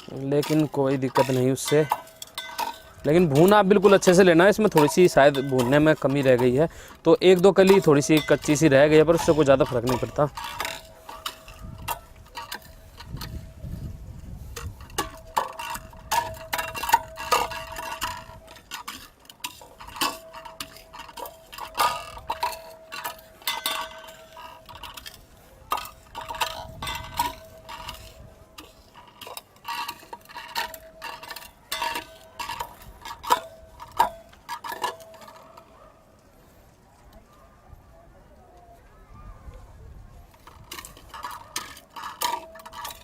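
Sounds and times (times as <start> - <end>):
metal utensil pounding in metal vessel: 0.0 - 13.4, 14.6 - 35.5, 40.5 - 43.0.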